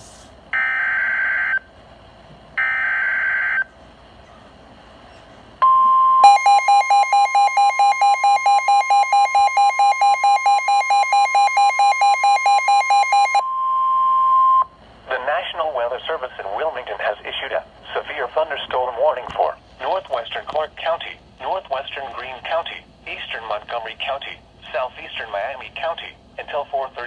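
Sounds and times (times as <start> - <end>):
steady warning alarm tone: 0.5 - 1.7, 2.6 - 3.7, 5.6 - 14.7
rapid electronic alarm beeping: 5.6 - 14.6.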